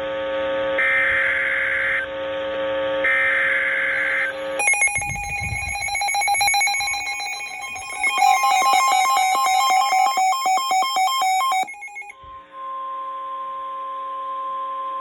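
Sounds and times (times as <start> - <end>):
raspy digital data bursts: 4.3 - 12.1
two-tone alert tone: 4.3 - 12.1.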